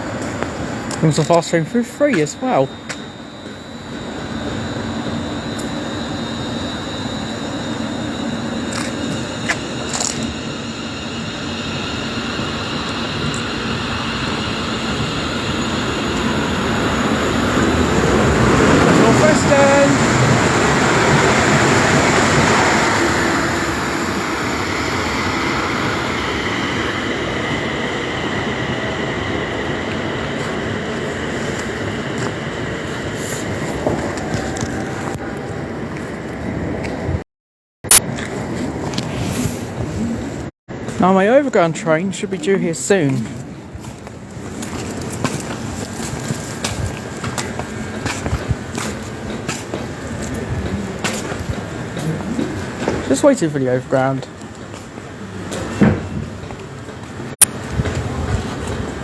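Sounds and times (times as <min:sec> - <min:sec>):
train passing at speed: 0:00.0 - 0:37.2, 0:38.3 - 0:59.0
train wheels clicking on rails: 0:08.5 - 0:35.0, 0:40.9 - 0:59.0.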